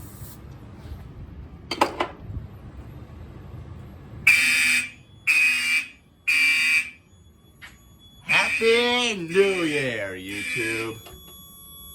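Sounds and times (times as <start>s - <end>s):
fire alarm horns blasting: 4.2s - 11.9s.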